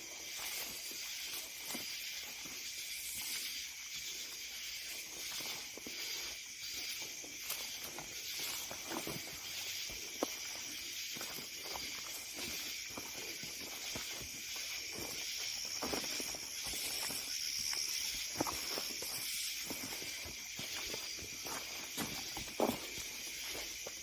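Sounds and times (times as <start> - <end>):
high-pitched insect chorus: 0.0 - 24.0
footsteps: 4.9 - 24.0.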